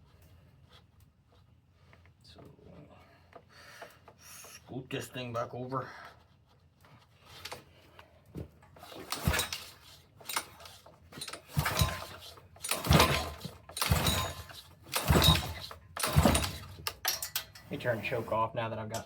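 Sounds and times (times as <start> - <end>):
engine recoil starter yanks: 8.8 - 19.0.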